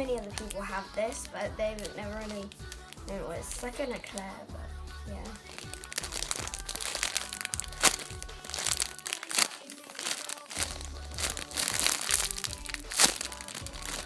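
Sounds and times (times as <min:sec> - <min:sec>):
background music: 0:00.0 - 0:14.0
plastic packaging crinkling: 0:05.4 - 0:14.0.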